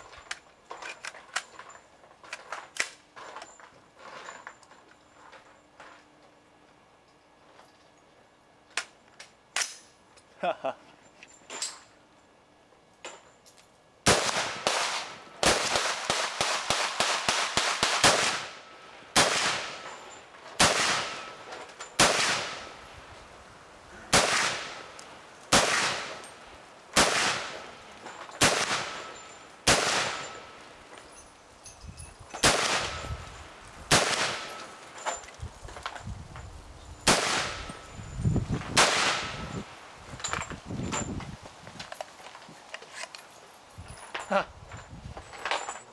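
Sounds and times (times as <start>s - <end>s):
rifle gunshots with echo: 14.1s - 18.6s, 19.2s - 19.9s, 20.6s - 21.4s, 22.0s - 22.7s, 24.1s - 24.9s, 25.5s - 26.2s, 27.0s - 27.7s, 28.4s - 30.5s, 32.4s - 33.1s, 33.9s - 34.6s, 37.1s - 37.7s, 38.8s - 39.6s.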